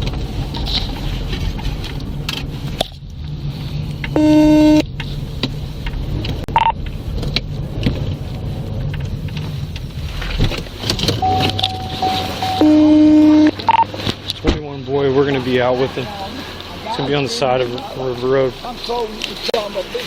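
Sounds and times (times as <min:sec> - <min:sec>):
vehicle rumbling: 0:00.0 - 0:20.0
loud electronic beep: 0:04.2 - 0:04.8, 0:11.2 - 0:13.9
steady high tone: 0:04.2 - 0:04.8, 0:11.2 - 0:13.8
short high chirp: 0:11.2 - 0:13.5.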